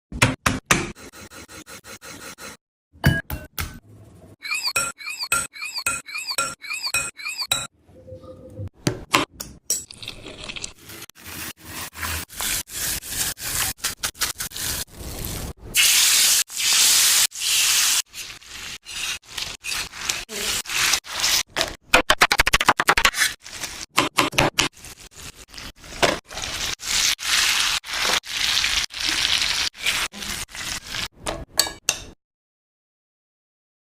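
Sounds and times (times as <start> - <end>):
hot oil sizzling: 10.6 - 21.4, 24.8 - 31.1.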